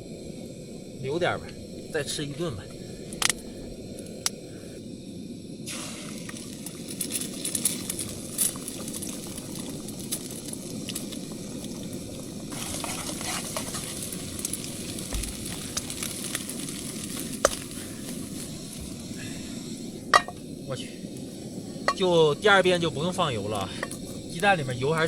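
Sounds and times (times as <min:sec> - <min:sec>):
food sizzling in a pan: 0:05.6 - 0:25.0
utensil scraping a pan: 0:12.5 - 0:16.0.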